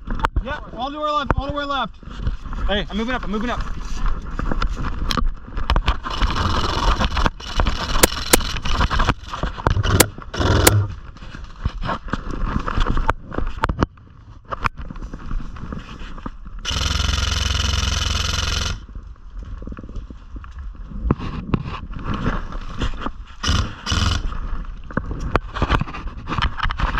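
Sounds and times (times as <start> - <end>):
sharp clicks: 5.8 - 10.9, 16.6 - 18.9, 23.4 - 24.4.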